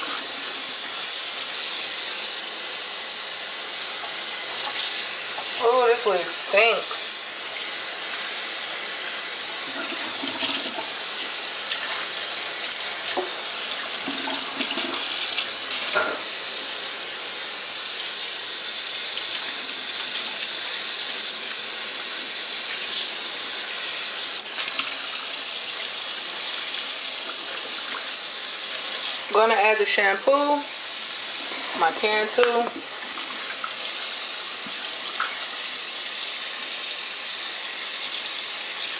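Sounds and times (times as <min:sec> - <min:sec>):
tap water splashing: 0:11.7 - 0:16.2, 0:24.4 - 0:25.2, 0:32.0 - 0:33.8, 0:34.6 - 0:35.5.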